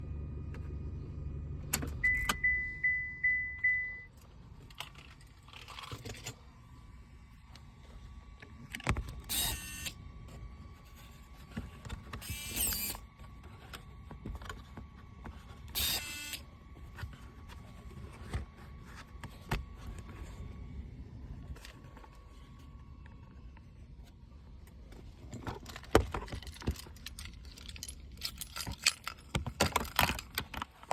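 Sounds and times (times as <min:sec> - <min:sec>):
low engine rumble: 0:00.0 - 0:05.2
truck warning chime dinging: 0:02.0 - 0:04.1
faint steady tone: 0:02.0 - 0:04.2.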